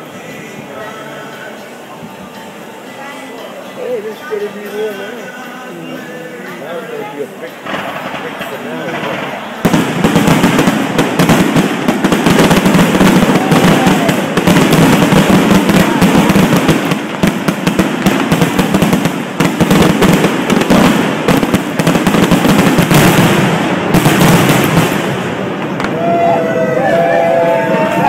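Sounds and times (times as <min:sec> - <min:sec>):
fireworks barrage: 0:07.5 - 0:28.0.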